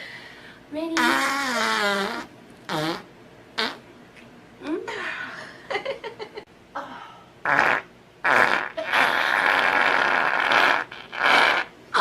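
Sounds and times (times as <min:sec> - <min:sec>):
farts: 0:01.0 - 0:03.8, 0:07.5 - 0:12.0.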